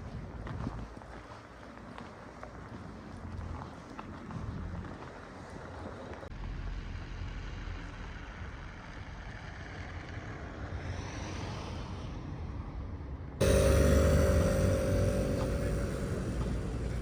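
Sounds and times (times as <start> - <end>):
high hiss: 13.4 - 17.0
low outdoor rumble: 13.4 - 17.0.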